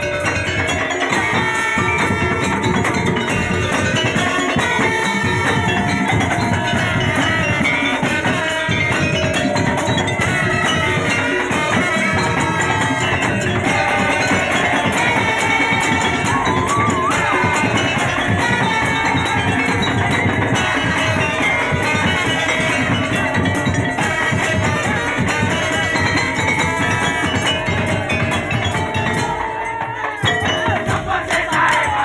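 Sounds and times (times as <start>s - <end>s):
music with dense percussion: 0.0s - 32.0s.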